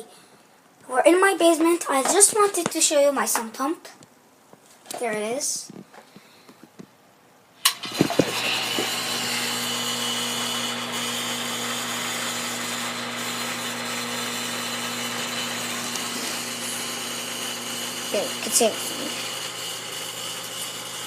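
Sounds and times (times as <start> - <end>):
pump motor hum: 7.6 - 21.0
water rushing through pump: 7.7 - 19.8.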